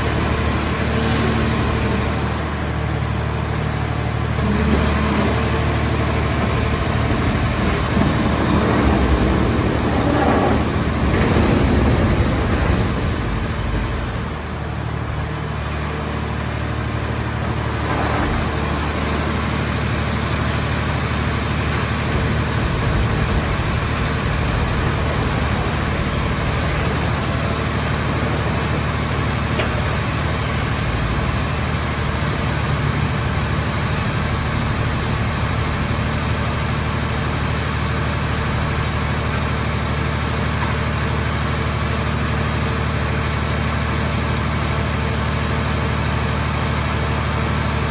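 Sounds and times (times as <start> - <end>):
baler engine humming: 4.3 - 15.7.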